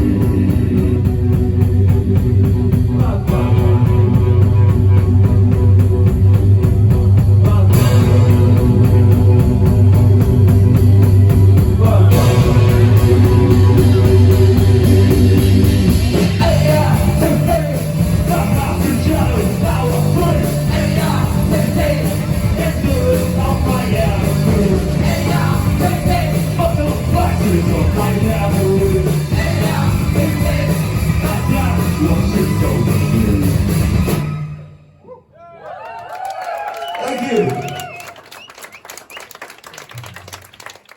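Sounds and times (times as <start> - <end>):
person singing: 0.0 - 5.6, 6.9 - 33.7
live rock band playing: 0.0 - 34.8.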